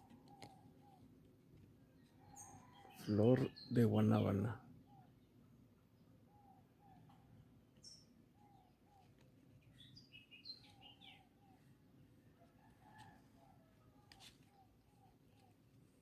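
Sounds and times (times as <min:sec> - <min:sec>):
high bird chirps: 0:09.7 - 0:11.6.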